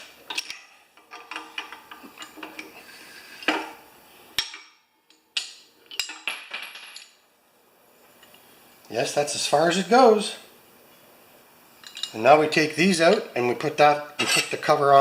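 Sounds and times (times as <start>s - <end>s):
metal clicks and rattles: 0.3s - 2.7s.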